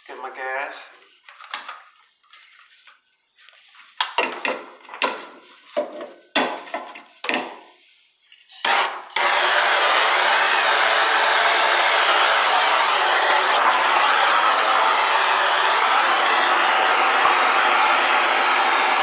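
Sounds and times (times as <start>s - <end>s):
gas hissing: 8.6s - 19.0s
torch flame hissing: 9.2s - 19.0s.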